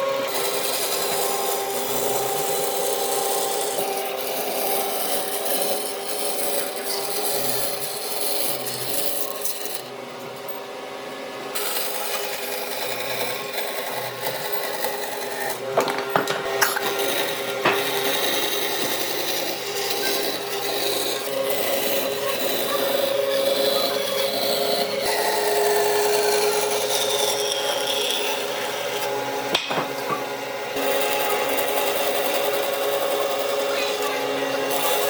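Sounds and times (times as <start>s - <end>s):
power tool motor: 0.0s - 10.6s, 11.4s - 35.0s
abrasive scraping on wood: 11.6s - 35.0s.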